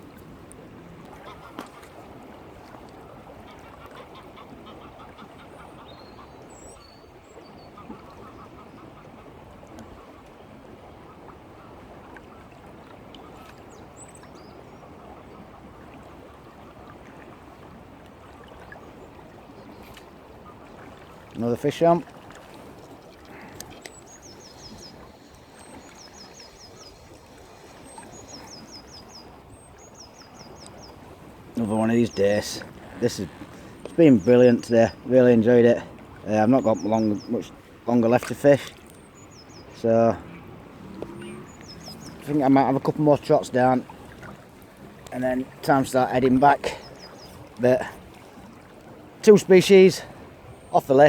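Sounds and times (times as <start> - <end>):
songbird singing: 3.5 - 9.0, 12.3 - 16.6, 18.2 - 51.0
river water rushing: 16.9 - 51.0
faint clicks: 22.3 - 28.4, 32.1 - 34.0, 38.2 - 39.1, 40.9 - 42.3
ducks quacking: 31.5 - 35.6.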